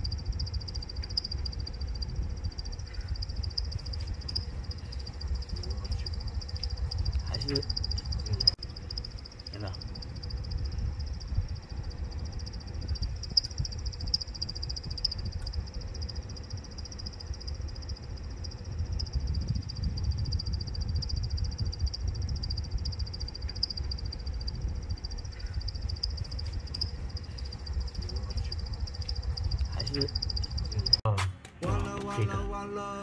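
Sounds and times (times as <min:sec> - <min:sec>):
low fan rumble: 0:00.0 - 0:33.0.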